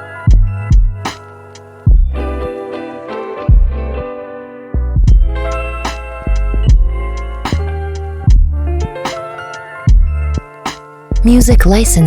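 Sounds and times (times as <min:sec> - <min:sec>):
deep bass hit: 0:00.3 - 0:01.0, 0:01.9 - 0:02.2, 0:03.5 - 0:04.0, 0:04.8 - 0:05.6, 0:06.3 - 0:07.7, 0:08.3 - 0:08.9, 0:09.9 - 0:10.4.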